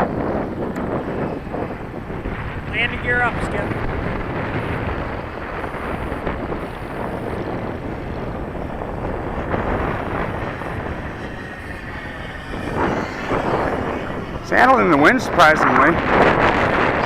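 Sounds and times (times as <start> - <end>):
model plane whine: 0.0 - 17.0
wind rumbling on microphone: 0.0 - 17.0.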